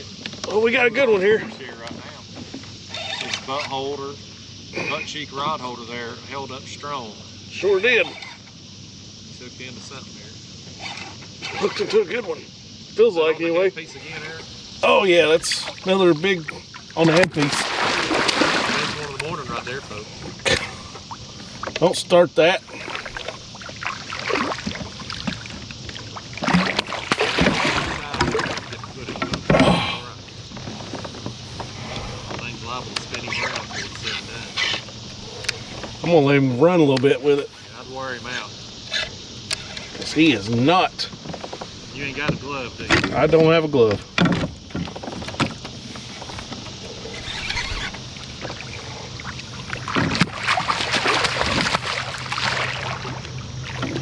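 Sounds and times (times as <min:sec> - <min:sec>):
water splashing: 0:14.0 - 0:36.2, 0:45.0 - 0:54.0
clattering knocks on a kayak: 0:41.2 - 0:46.8.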